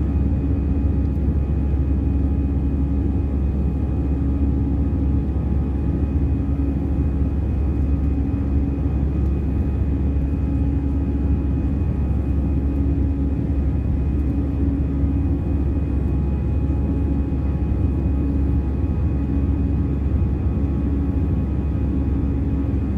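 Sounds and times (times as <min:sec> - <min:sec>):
airliner cabin engine rumble: 0:00.0 - 0:22.9
constant hum: 0:00.0 - 0:22.9.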